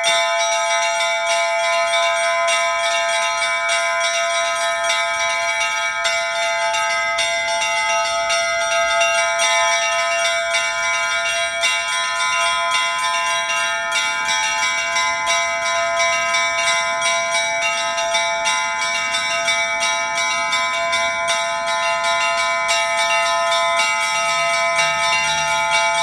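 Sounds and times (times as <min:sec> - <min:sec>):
church bells pealing: 0:00.0 - 0:26.0.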